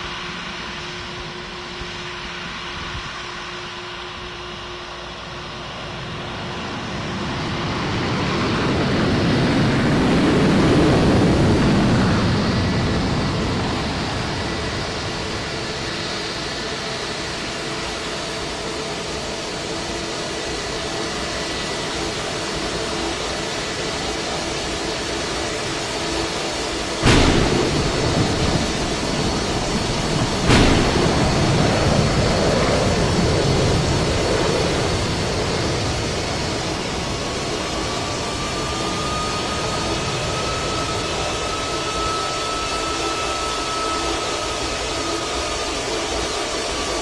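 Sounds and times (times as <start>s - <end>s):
jet engine roar: 0.0s - 47.0s.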